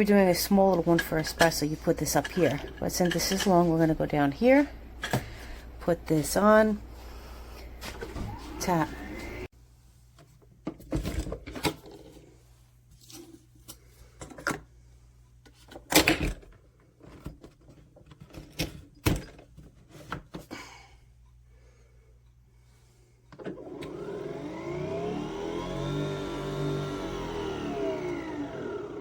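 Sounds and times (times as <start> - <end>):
motor whine: 8.0 - 9.5, 23.6 - 29.0.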